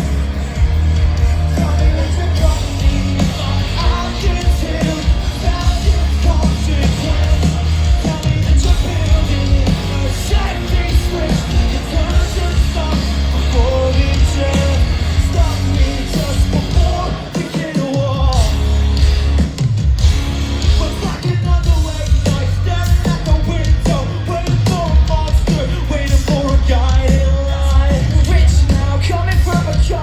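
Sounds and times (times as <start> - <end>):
live rock band playing: 0.0 - 30.0
person singing: 1.2 - 18.6.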